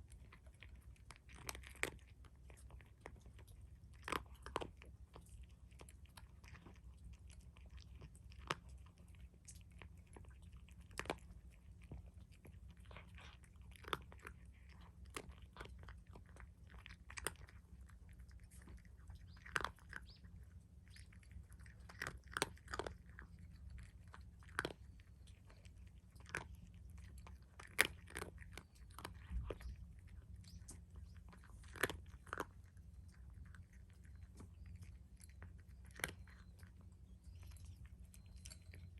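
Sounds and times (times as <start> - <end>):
cat crunching food: 0.0 - 38.9
faint low hum: 0.0 - 38.9.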